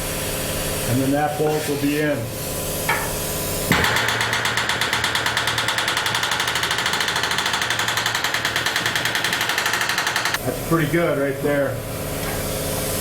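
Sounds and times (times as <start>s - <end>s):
pneumatic rivet hammer on steel: 2.9s - 10.4s.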